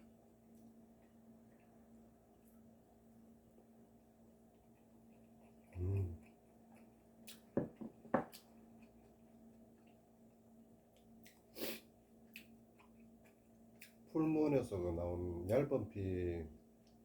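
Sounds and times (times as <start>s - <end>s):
person humming while eating: 5.7s - 6.3s
sniff-like breath: 11.5s - 11.9s.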